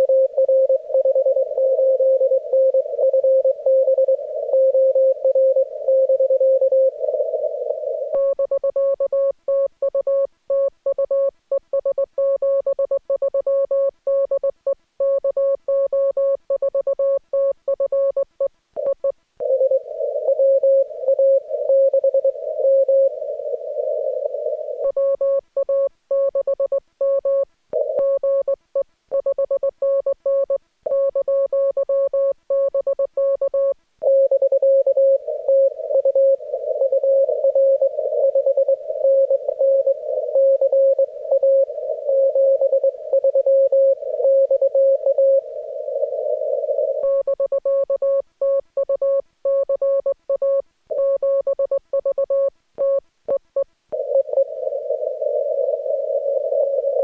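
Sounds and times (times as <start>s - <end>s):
radio hiss: 19.8s - 24.8s, 35.2s - 40.4s, 45.0s - 47.0s, 53.9s - 57.0s.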